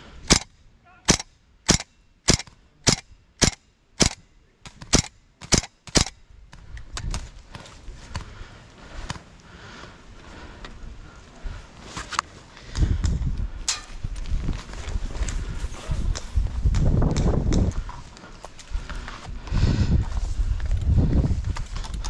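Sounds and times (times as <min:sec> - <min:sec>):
airsoft gun shots: 0:00.3 - 0:00.5, 0:01.1 - 0:04.2, 0:04.8 - 0:06.1.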